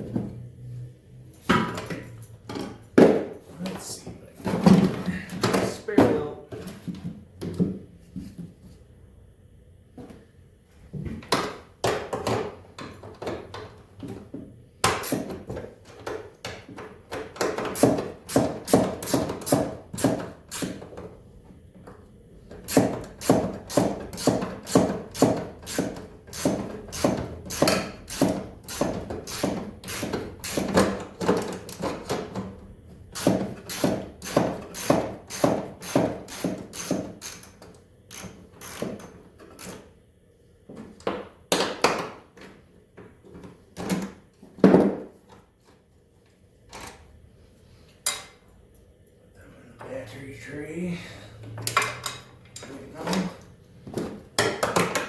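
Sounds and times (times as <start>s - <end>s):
ratchet wrench clicking: 22.6s - 30.8s, 33.2s - 39.8s.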